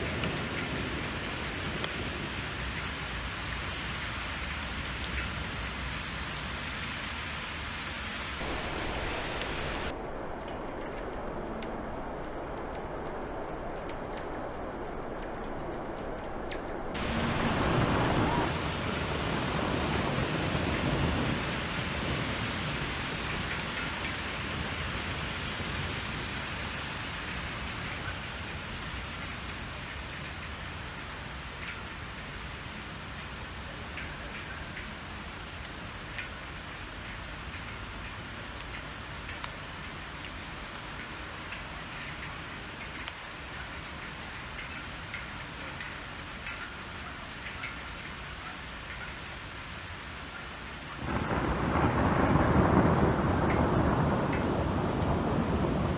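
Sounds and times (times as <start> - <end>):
hailstones ticking on hard surfaces: 0.0 - 9.9, 17.0 - 55.9
hail and rain hissing: 0.0 - 10.0, 17.0 - 55.9.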